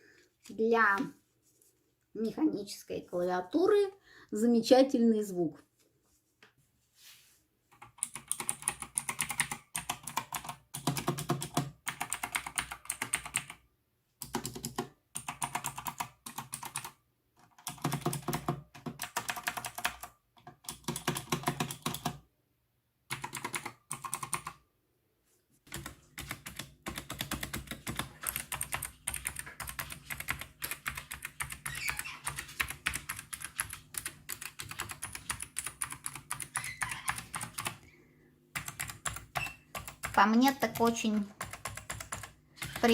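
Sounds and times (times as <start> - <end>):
typing on mechanical keyboard: 7.7 - 13.6, 14.2 - 22.2, 23.1 - 24.6, 25.7 - 37.8, 38.5 - 42.9.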